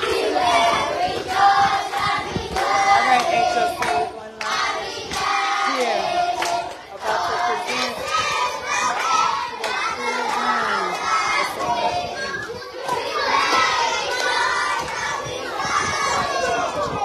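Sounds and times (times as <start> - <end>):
children singing together: 0.0 - 17.0
hand claps: 1.2 - 11.7.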